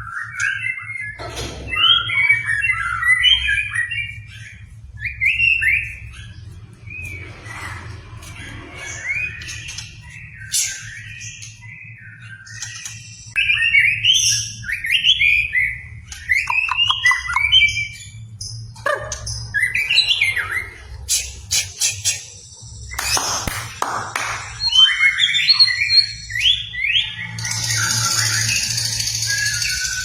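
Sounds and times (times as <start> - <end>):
bird song with whistled phrases: 0.0 - 7.5, 8.4 - 30.0.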